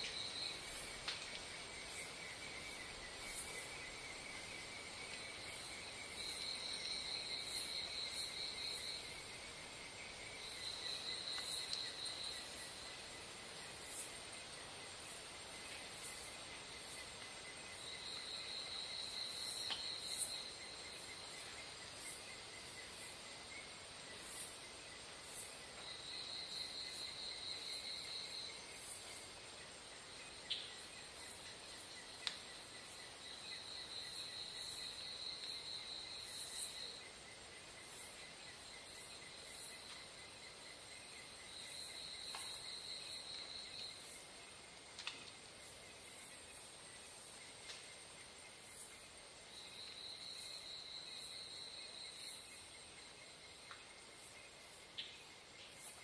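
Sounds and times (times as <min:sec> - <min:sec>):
faint sharp clicks: 0:01.0 - 0:01.5, 0:11.3 - 0:11.9, 0:19.6 - 0:20.0, 0:32.2 - 0:32.5, 0:42.3 - 0:42.6, 0:44.9 - 0:45.4, 0:47.6 - 0:47.9, 0:53.6 - 0:53.9.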